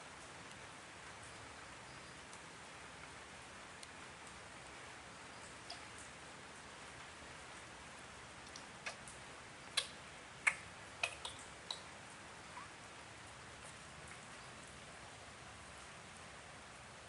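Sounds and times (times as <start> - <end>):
faint steady hiss: 0.0 - 17.0
light sharp clicks: 8.4 - 11.9.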